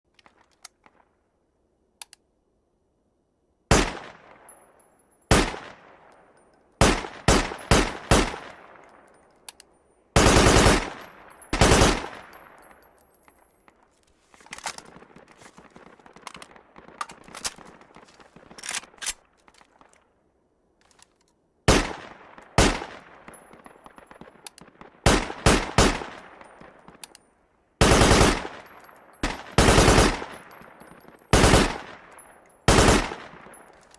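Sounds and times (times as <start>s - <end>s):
rifle gunshots with echo: 3.7s - 4.5s, 5.3s - 6.1s, 6.8s - 8.9s, 10.2s - 12.5s, 21.7s - 26.6s, 27.8s - 33.6s
automatic gunfire bursts: 10.2s - 11.0s, 11.6s - 12.2s, 27.8s - 28.5s, 29.2s - 30.3s, 31.3s - 31.9s, 32.7s - 33.3s.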